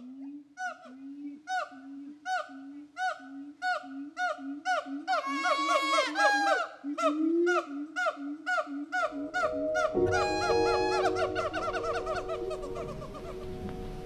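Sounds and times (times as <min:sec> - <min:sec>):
gibbons whooping barks: 0:04.2 - 0:13.4.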